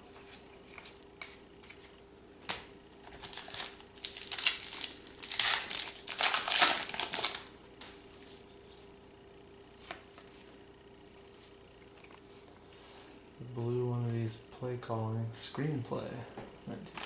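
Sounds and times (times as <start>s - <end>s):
wrapper crinkling: 3.0s - 7.5s.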